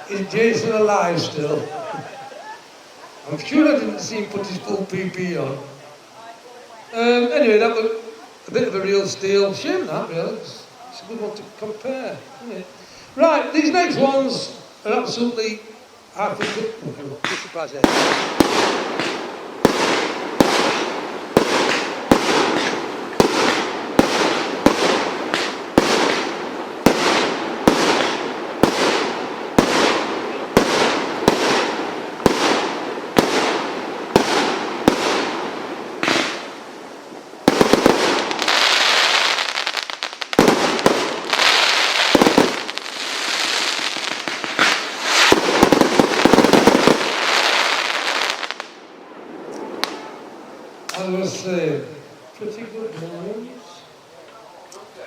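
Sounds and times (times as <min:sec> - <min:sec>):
firework shots crackling: 0:13.2 - 0:50.2.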